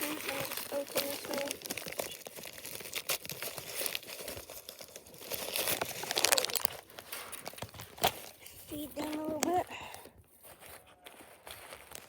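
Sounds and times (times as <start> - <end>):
feed bag tearing and crinkling: 0.0 - 9.5.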